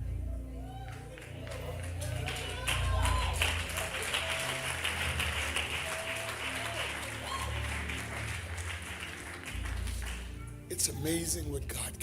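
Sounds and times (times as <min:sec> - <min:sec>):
soft keyboard and bass: 0:00.0 - 0:04.1, 0:07.2 - 0:12.0
congregation applauding: 0:00.7 - 0:11.2.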